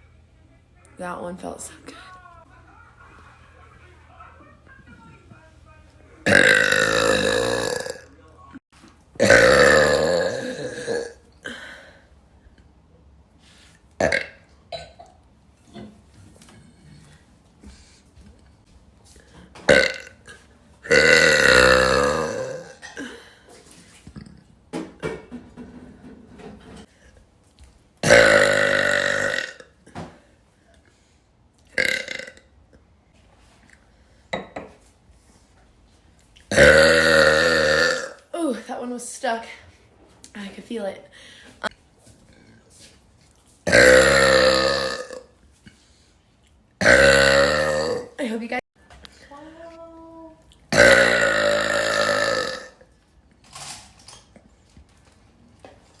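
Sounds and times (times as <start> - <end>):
woman talking: 0.9 - 2.3, 38.3 - 41.2, 48.2 - 48.6, 49.2 - 50.5
woman burping: 6.2 - 8.1, 9.2 - 11.9, 14.0 - 15.2, 19.6 - 23.4, 28.0 - 30.1, 31.7 - 32.5, 36.5 - 38.2, 43.7 - 45.3, 46.8 - 48.2, 50.7 - 52.9.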